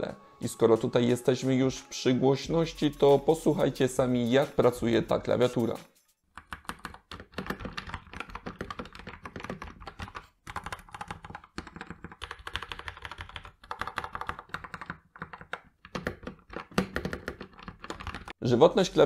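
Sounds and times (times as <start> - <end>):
mechanical keyboard clacks: 6.4 - 18.4.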